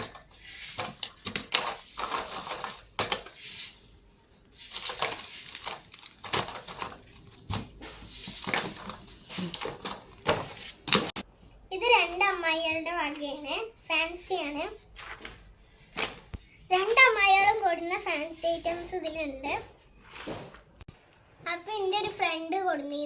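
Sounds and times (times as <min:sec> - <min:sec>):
small hard items clicking and clinking: 0:00.0 - 0:03.6, 0:04.6 - 0:11.2
packaging rustling: 0:04.6 - 0:11.2.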